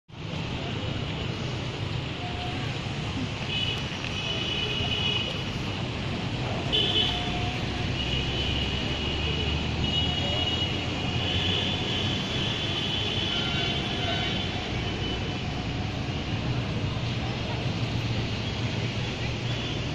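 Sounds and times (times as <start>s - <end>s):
traffic rumble: 0.1s - 19.9s
vehicle horns: 6.6s - 16.3s.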